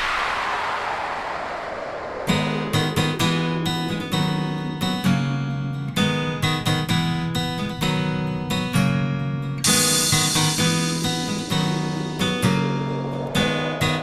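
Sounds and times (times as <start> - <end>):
acoustic guitar strumming: 3.2 - 14.0.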